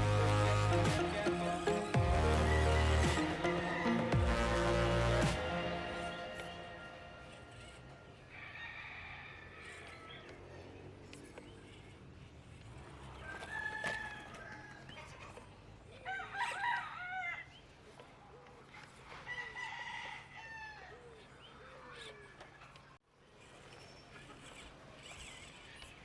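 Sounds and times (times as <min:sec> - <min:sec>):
rooster crowing: 0:01.9 - 0:06.5, 0:08.3 - 0:10.2, 0:13.2 - 0:14.9, 0:16.0 - 0:17.5, 0:19.3 - 0:21.0.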